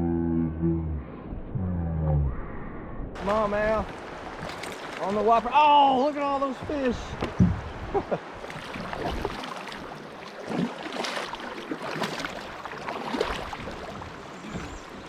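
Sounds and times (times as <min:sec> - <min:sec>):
small irregular splashes: 0:03.2 - 0:05.6, 0:08.4 - 0:15.0
river water splashing: 0:03.2 - 0:15.0.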